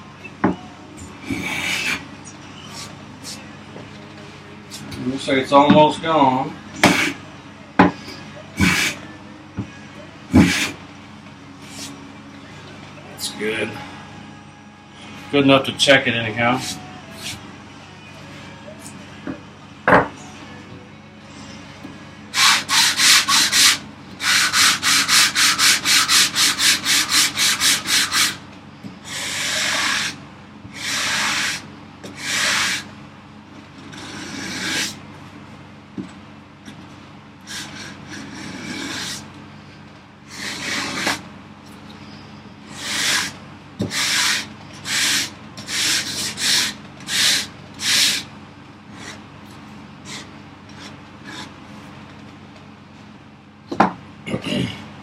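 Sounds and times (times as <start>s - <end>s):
hand tool scraping wood: 1.2s - 2.0s, 6.8s - 7.2s, 8.6s - 9.0s, 10.3s - 10.8s, 22.4s - 28.4s, 29.1s - 32.9s, 33.9s - 35.0s, 37.5s - 39.3s, 40.3s - 41.2s, 42.7s - 48.2s.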